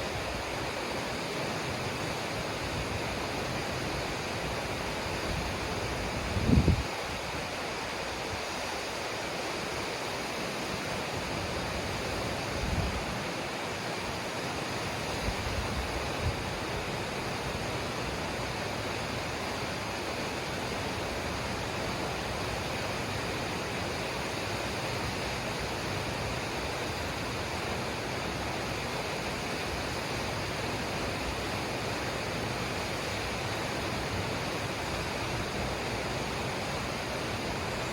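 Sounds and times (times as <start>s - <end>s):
waterfall rushing: 0.0s - 37.9s.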